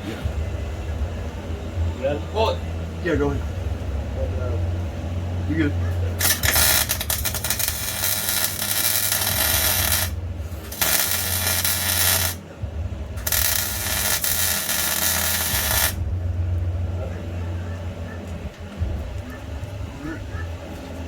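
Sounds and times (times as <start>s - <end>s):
steady low hum: 0.0s - 21.0s
arc welder crackling and hissing: 6.2s - 12.4s, 13.2s - 16.1s.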